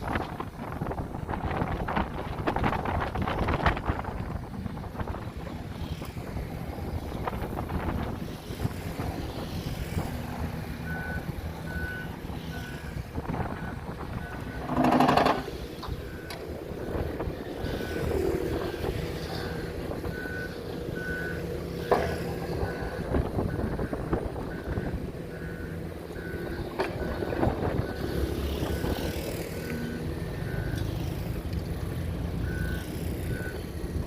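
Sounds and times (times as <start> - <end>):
diesel engine rumble: 0.0 - 34.0
reversing alarm beeps: 10.8 - 31.0, 32.4 - 34.0.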